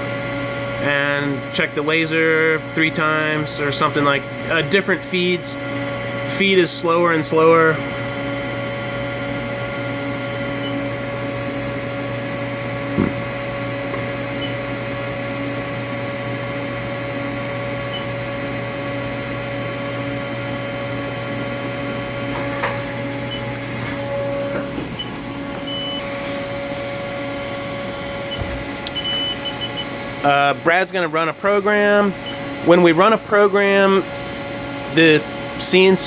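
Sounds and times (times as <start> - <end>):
mill machine humming and whining: 0.0 - 35.9
single knock: 13.0 - 13.2.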